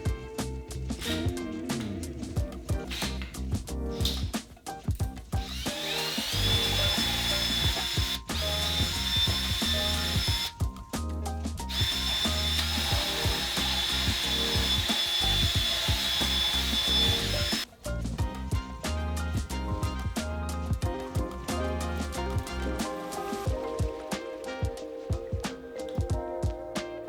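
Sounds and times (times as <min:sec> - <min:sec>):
background music: 0:00.0 - 0:27.0
power drill whining: 0:01.0 - 0:01.4, 0:02.9 - 0:03.4, 0:05.4 - 0:10.6, 0:11.7 - 0:17.7.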